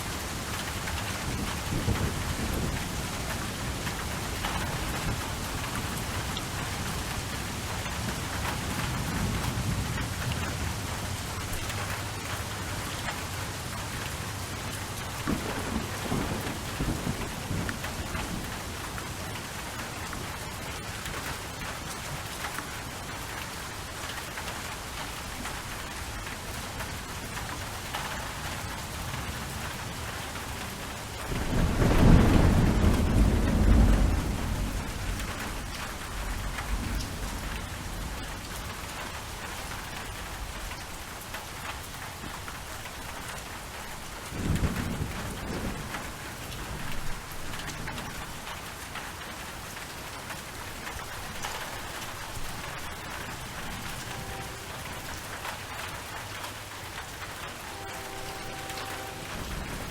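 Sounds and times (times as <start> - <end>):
steady rain falling: 0.0 - 59.9
thunder rumbling: 0.1 - 21.3, 28.4 - 41.0, 44.1 - 48.6, 51.0 - 59.9.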